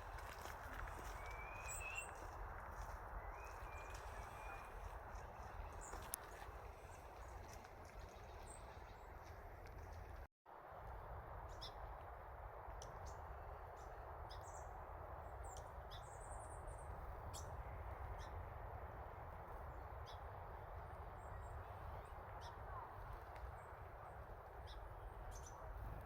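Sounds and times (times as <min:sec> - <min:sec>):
small birds chirping: 0:00.3 - 0:10.2.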